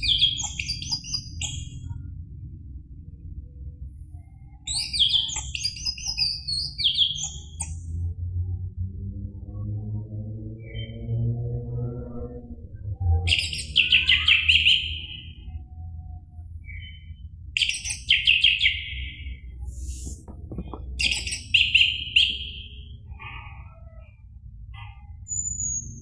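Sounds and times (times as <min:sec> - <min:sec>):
low steady hum: 0:00.0 - 0:13.4.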